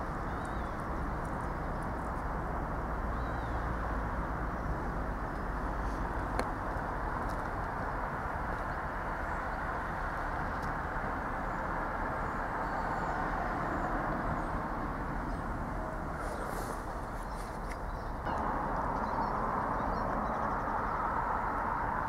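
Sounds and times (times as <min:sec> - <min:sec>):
train rumbling: 0:13.0 - 0:22.0.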